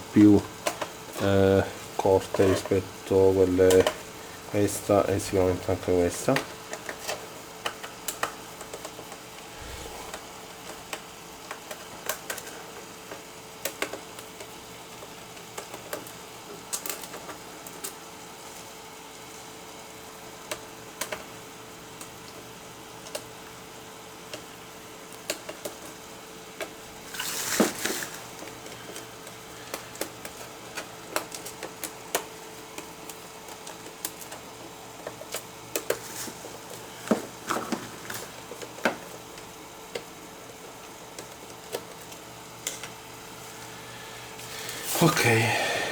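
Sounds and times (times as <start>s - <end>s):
faint steady hum: 0.0s - 45.9s
brief scrape: 9.6s - 10.2s.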